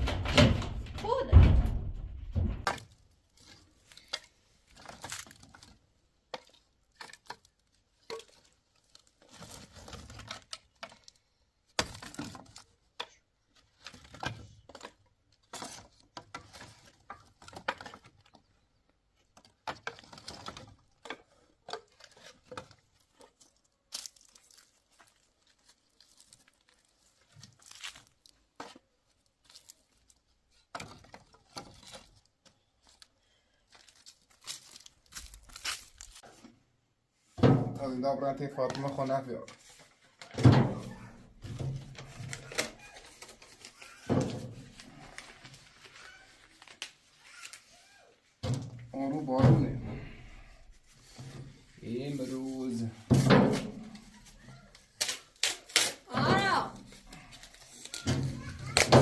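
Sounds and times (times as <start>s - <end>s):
rustling and crinkling wrappings: 2.8s - 11.3s, 21.8s - 36.5s, 41.2s - 49.4s, 50.4s - 59.0s.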